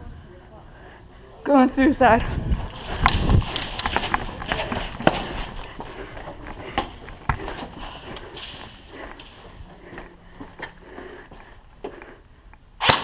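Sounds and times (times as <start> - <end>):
running footfalls: 2.1 - 12.2.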